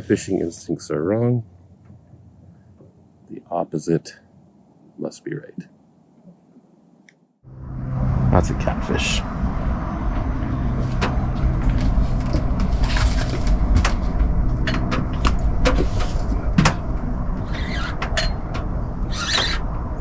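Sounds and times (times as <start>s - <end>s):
steady low rumble: 7.4s - 20.0s.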